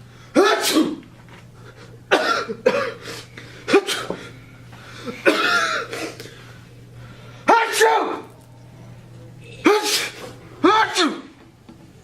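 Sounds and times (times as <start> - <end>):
person coughing: 0.3 - 1.0, 2.1 - 4.3, 5.0 - 6.2
person sneezing: 0.3 - 1.0, 2.1 - 4.3, 5.0 - 6.4, 7.4 - 8.3, 9.6 - 11.3.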